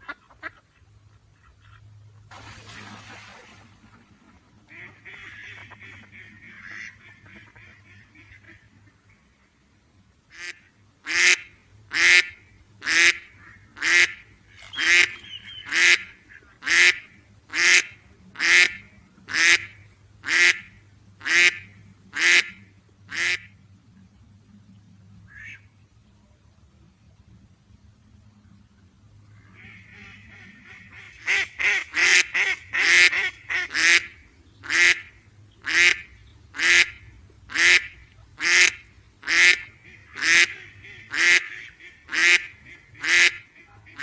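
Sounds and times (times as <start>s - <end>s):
duck quacking: 4.7s - 8.9s, 10.3s - 23.5s, 29.4s - 44.0s.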